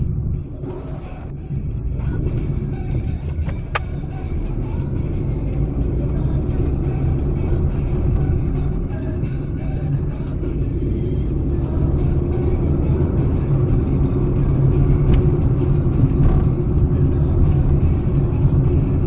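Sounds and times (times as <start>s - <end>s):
car engine and road rumble: 0.0s - 19.0s.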